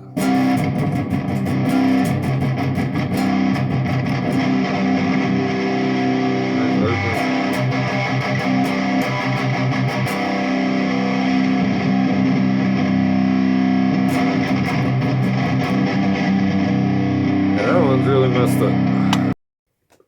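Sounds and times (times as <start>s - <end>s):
electric guitar notes: 0.0s - 19.4s.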